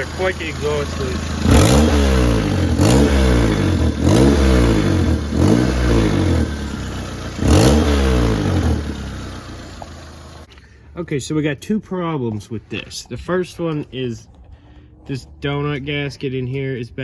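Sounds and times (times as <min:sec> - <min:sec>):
car engine revving: 0:00.0 - 0:10.5
exhaust leak bursts: 0:00.0 - 0:10.6.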